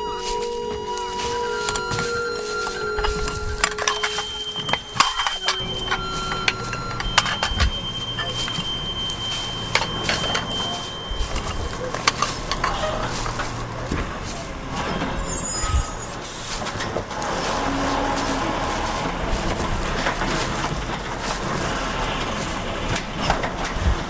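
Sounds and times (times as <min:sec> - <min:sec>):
steady tones: 0:01.1 - 0:14.2
clicks and thumps: 0:01.6 - 0:14.1.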